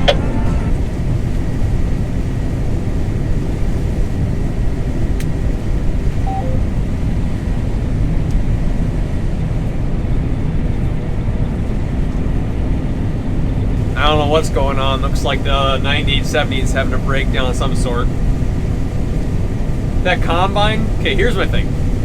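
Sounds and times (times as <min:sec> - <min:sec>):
faint whine: 0:00.0 - 0:08.0, 0:13.5 - 0:22.0
heavy machinery engine rumble: 0:10.2 - 0:22.0.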